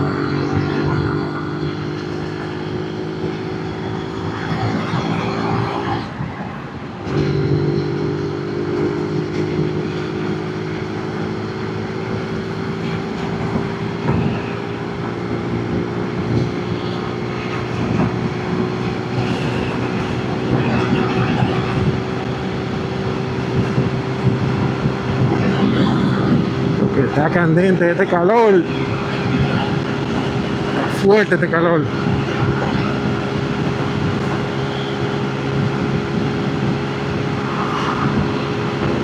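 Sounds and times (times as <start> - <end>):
motorcycle engine running: 7.1 - 31.2.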